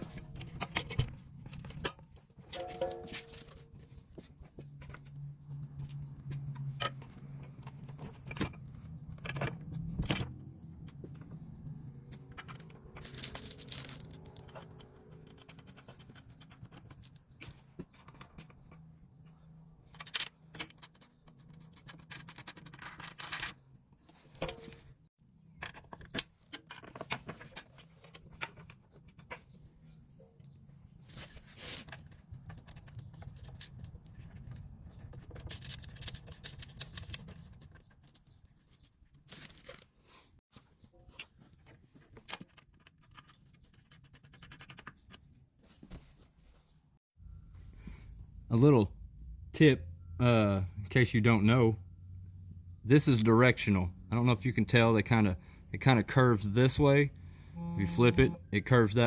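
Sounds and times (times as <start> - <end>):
metal hardware clinking: 0.0 - 3.9
faint low hum: 56.5 - 59.0.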